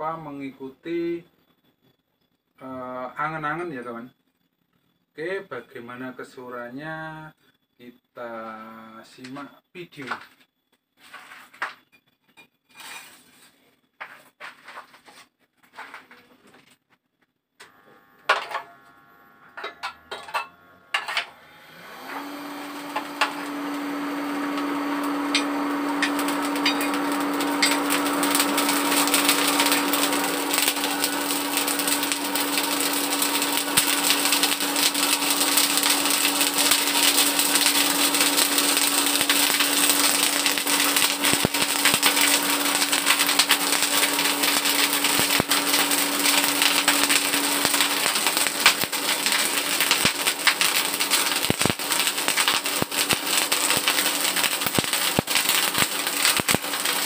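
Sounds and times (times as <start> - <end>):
electric motor with rasping hiss: 17.6 - 57.0
metal being handled: 19.6 - 21.4.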